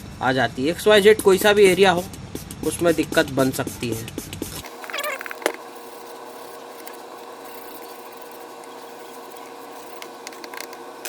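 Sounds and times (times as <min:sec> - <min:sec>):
small motor humming: 0:04.6 - 0:11.0.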